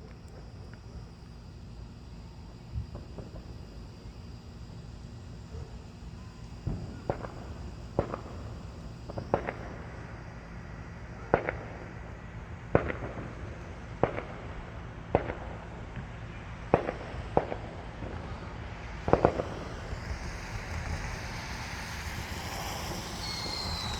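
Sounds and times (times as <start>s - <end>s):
distant fireworks bangs: 2.7s - 4.2s, 6.6s - 10.2s, 11.2s - 12.0s, 12.7s - 23.9s.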